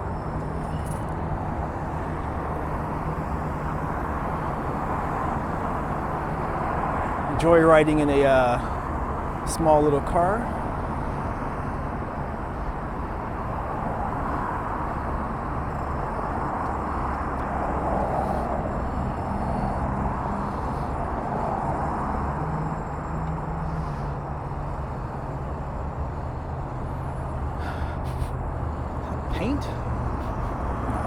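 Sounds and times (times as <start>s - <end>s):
road noise hiss: 0.0s - 31.0s
vehicle engine rumble: 0.0s - 31.0s.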